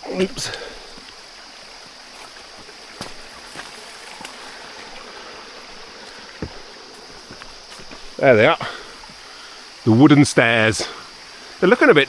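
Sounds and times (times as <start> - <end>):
mountain stream rushing: 0.0 - 12.0
footsteps on trail: 0.2 - 9.6.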